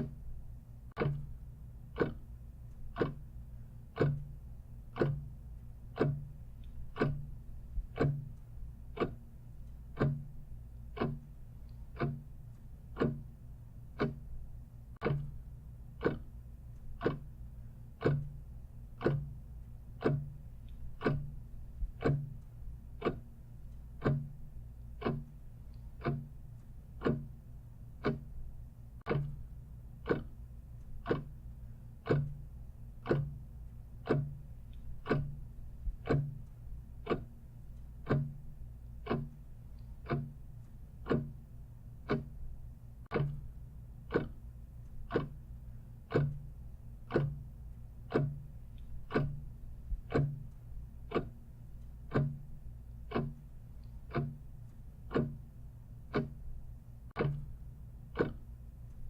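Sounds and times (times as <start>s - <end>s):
clock ticking: 0.0s - 59.0s
faint low hum: 0.0s - 59.0s.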